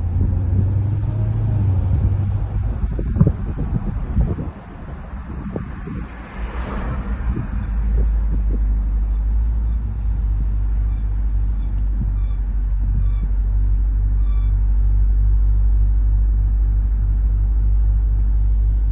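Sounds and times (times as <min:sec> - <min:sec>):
car driving rumble: 0:00.0 - 0:18.9
short high squeaks: 0:07.5 - 0:13.4, 0:14.2 - 0:14.6.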